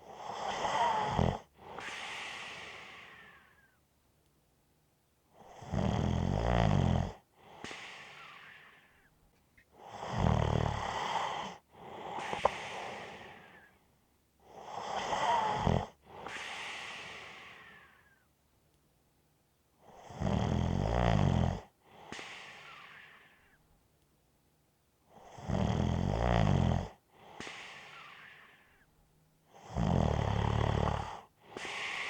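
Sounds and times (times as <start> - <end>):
person snoring: 0.4 - 1.9, 9.8 - 13.7, 14.8 - 16.4, 29.6 - 32.0.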